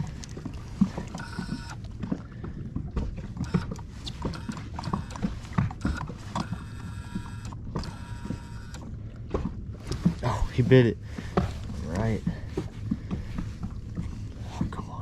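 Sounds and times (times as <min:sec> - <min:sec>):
light knocks and taps on boat: 0:00.0 - 0:15.0.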